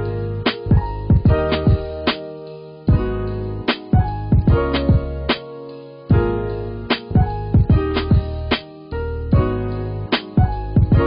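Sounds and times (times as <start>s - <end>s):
sustained keyboard chords: 0.0s - 11.0s
drum beat with kick drum: 0.5s - 2.2s, 3.7s - 5.2s, 6.1s - 6.3s, 6.9s - 8.6s, 10.2s - 11.0s.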